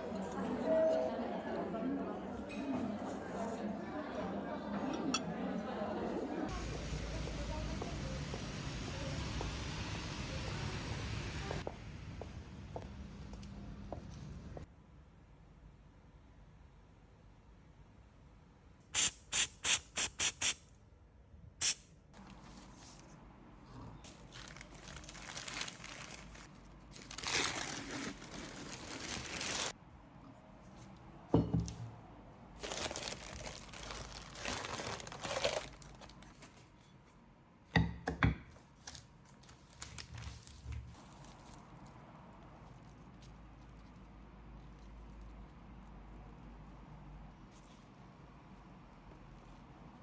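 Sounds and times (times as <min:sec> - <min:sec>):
hand mister spraying: 0:19.0 - 0:20.6, 0:21.6 - 0:21.8
rustling and scraping potting soil: 0:22.2 - 0:31.1, 0:32.5 - 0:37.2, 0:38.7 - 0:50.0.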